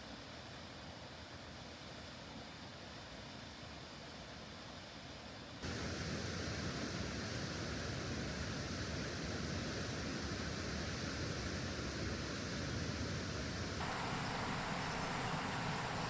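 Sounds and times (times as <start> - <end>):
steady rushing hiss: 5.6 - 16.0.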